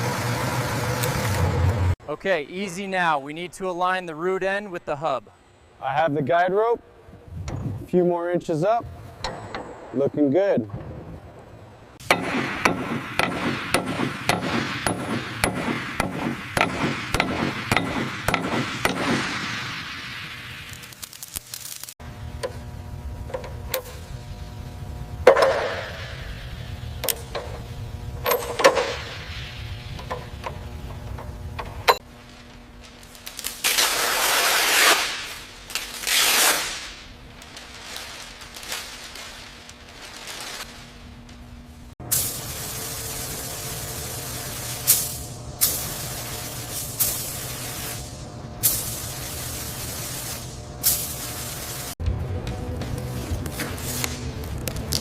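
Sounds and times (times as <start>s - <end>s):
hammer striking metal: 9.2s - 10.3s, 12.0s - 19.3s
loud hissing bursts: 12.0s - 22.0s, 28.8s - 30.9s, 42.0s - 52.0s.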